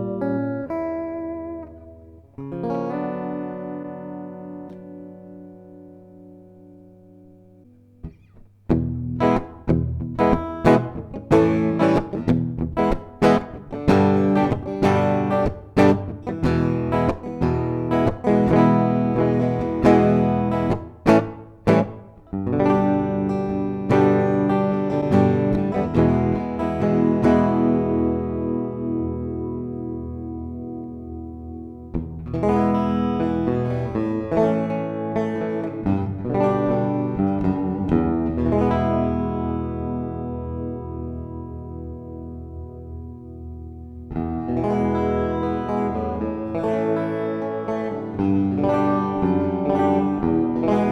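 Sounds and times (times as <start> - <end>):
clean guitar with reverb: 0.0 - 50.9.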